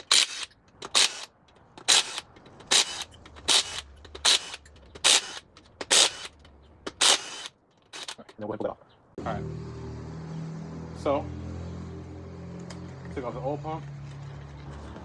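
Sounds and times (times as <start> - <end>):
hand ratchet pawl clicking: 0.0 - 8.2.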